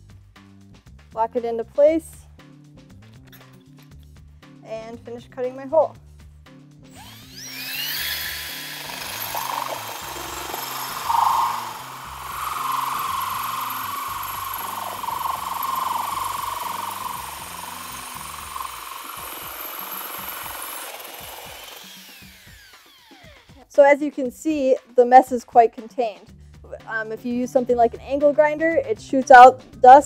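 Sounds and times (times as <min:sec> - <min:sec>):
power drill grinding through tile: 0:06.9 - 0:23.6.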